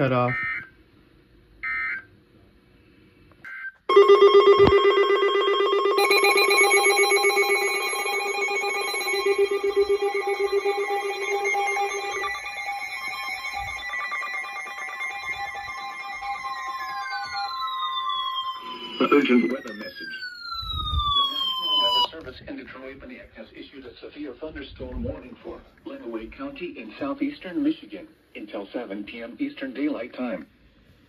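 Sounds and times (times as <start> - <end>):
falling tone: 3.9 - 22.1
rapid electronic alarm trill: 3.9 - 22.1.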